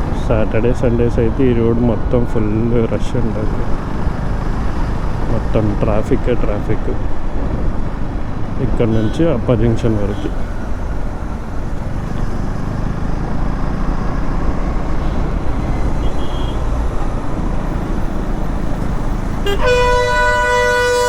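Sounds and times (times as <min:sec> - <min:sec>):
wind and road rumble: 0:00.0 - 0:21.0
vehicle horn two-tone blast: 0:16.0 - 0:16.6, 0:19.4 - 0:21.0.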